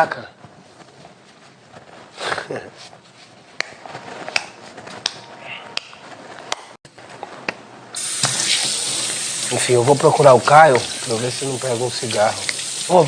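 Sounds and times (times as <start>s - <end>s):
loud steady hiss: 7.9s - 13.0s.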